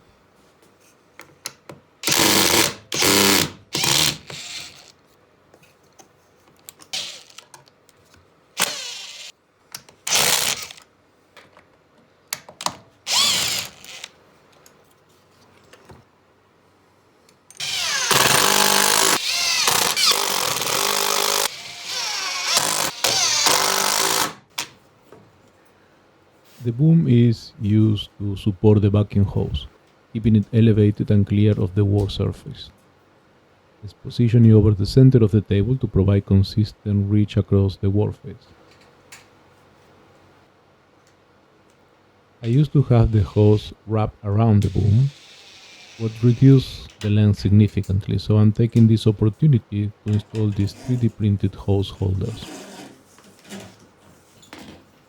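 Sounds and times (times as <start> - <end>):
power drill driving screws: 2.0 - 4.9, 7.0 - 7.4, 8.6 - 9.3, 10.1 - 10.8, 13.1 - 14.1, 17.6 - 24.7, 44.6 - 46.6.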